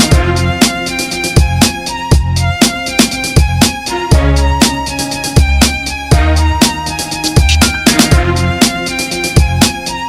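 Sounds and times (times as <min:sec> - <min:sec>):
background music with deep bass: 0:00.0 - 0:10.0.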